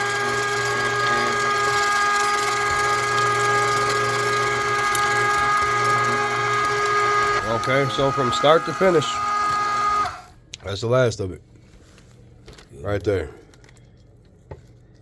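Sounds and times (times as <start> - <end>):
electric meat grinder running: 0.0 - 10.3.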